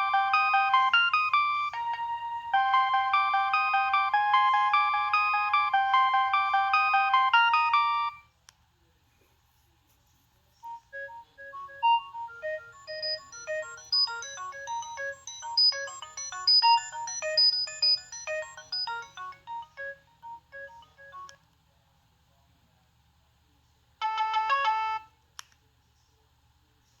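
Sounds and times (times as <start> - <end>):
electronic ringtone melody: 0.0 - 8.2, 10.6 - 21.4, 24.0 - 25.1
rapid repeated ringtone notes: 0.0 - 8.2, 10.7 - 21.4.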